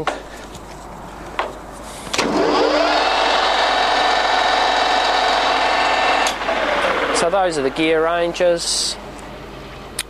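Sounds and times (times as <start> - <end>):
lathe gear whine: 2.2 - 9.6.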